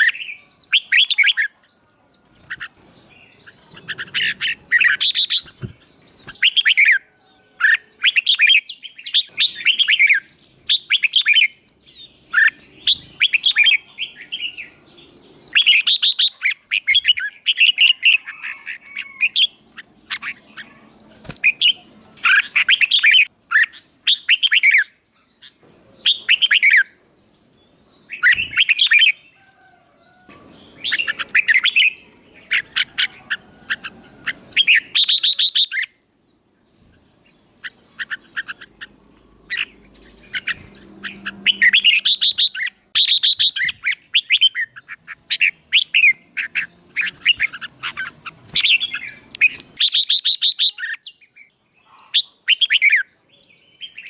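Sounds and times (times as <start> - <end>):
songbirds warbling: 0.0 - 54.0.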